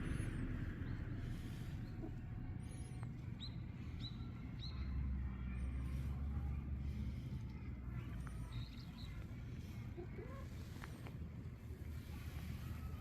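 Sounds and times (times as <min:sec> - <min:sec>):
low rumble: 0:00.0 - 0:07.9
small birds chirping: 0:00.0 - 0:11.1.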